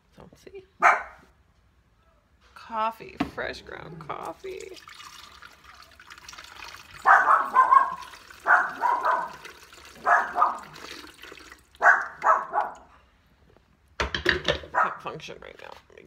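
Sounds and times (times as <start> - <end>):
dog barking: 0.8 - 1.3, 6.9 - 10.8, 11.8 - 13.0, 14.7 - 15.0.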